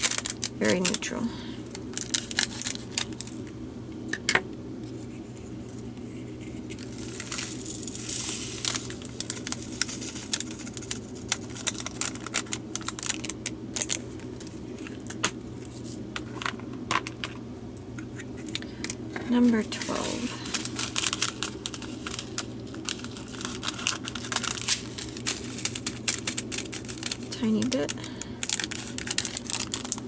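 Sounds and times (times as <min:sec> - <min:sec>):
plastic bag crinkling: 0:00.0 - 0:03.5, 0:06.4 - 0:15.9, 0:18.8 - 0:30.0
small beads pouring into container: 0:06.9 - 0:13.3.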